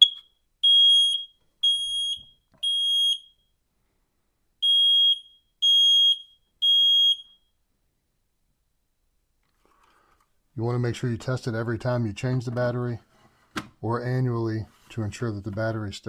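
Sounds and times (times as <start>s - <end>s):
smoke detector alarm beeps: 0.0s - 3.5s, 4.6s - 7.5s.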